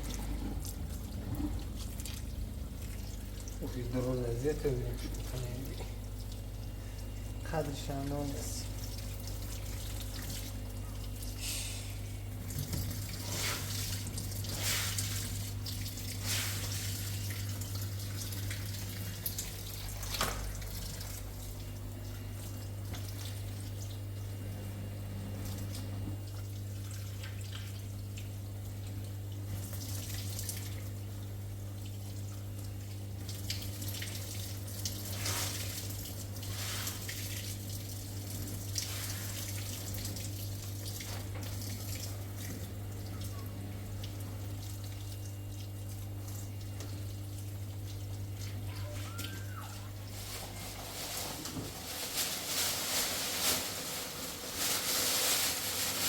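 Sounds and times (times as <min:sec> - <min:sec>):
splashes and clatter washing: 0:00.0 - 0:56.0
steady low hum: 0:00.0 - 0:56.0
tap water running into sink: 0:12.4 - 0:21.8.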